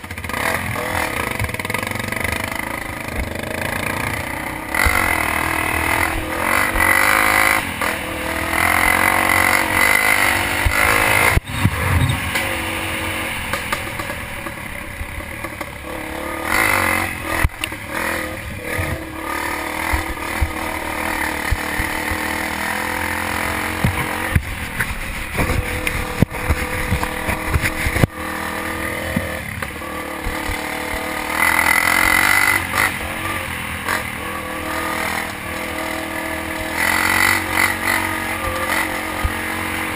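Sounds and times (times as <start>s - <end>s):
dirt bike engine revving: 0.0s - 39.9s
sharp knocks from rough ground: 13.5s - 14.6s, 23.7s - 28.2s, 29.0s - 30.6s.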